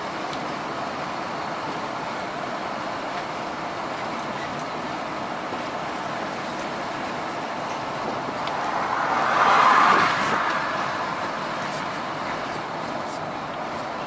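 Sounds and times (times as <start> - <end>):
road and engine noise: 0.0 - 14.0
vehicle passing: 7.8 - 13.2.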